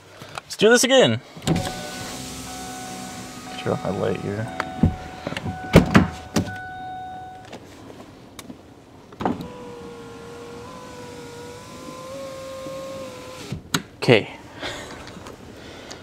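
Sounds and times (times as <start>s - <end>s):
power window motor whine: 1.4s - 7.5s, 9.3s - 13.5s.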